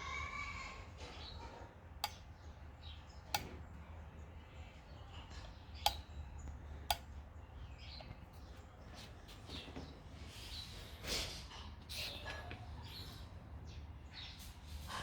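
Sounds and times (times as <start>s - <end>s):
sharp clicks of cable tester: 2.0s - 2.2s, 3.3s - 3.6s, 5.8s - 7.2s.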